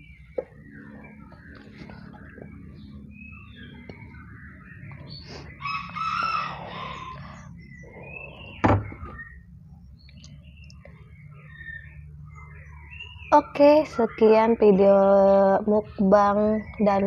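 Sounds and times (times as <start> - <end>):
small birds chirping: 0.0 - 17.0
rooster crowing: 5.5 - 8.2.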